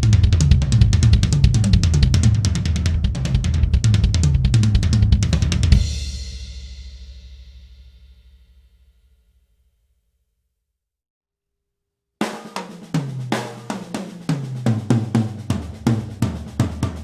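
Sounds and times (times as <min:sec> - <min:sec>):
drum kit playing: 0:00.0 - 0:08.8, 0:12.2 - 0:17.0.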